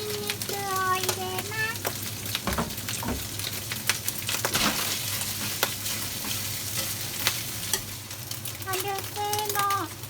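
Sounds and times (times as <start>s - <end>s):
meat and garlic sizzling in oil: 0.0s - 10.0s.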